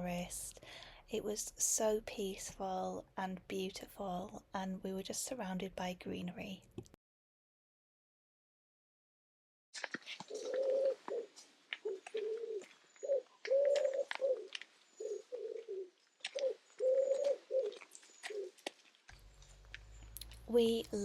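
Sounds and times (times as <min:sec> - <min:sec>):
small birds chirping faintly: 0:09.8 - 0:21.0
pigeon cooing: 0:10.3 - 0:18.6.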